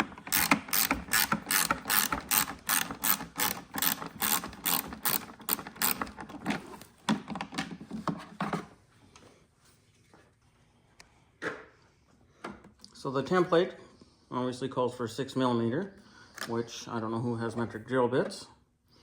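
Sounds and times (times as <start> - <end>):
ratchet clicking: 0.3 - 6.1.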